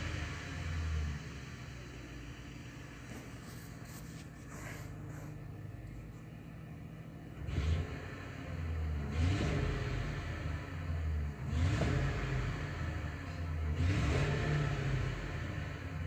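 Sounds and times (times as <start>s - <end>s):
car engine revving: 7.2s - 16.0s.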